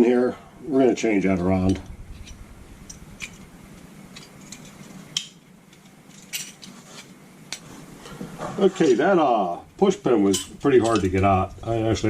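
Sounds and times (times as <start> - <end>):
hand tools clicking and snapping: 2.2 - 7.7, 10.3 - 11.2.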